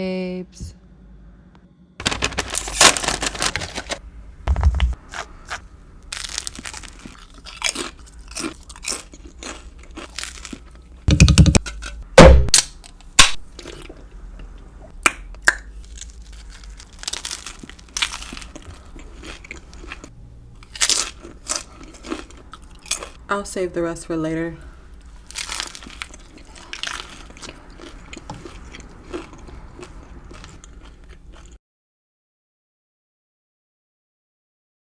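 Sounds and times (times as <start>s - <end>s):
crunchy bites and chewing: 4.6s - 23.3s, 24.9s - 31.6s.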